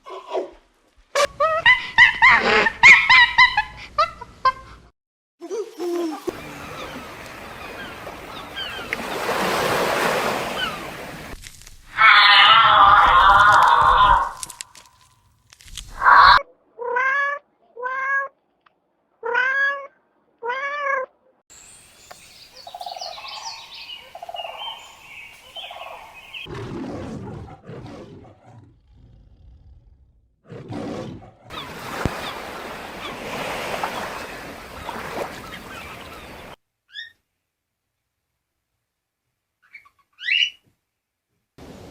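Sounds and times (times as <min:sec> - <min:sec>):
animal cries: 0:11.9 - 0:14.6, 0:16.0 - 0:18.3, 0:19.2 - 0:21.1.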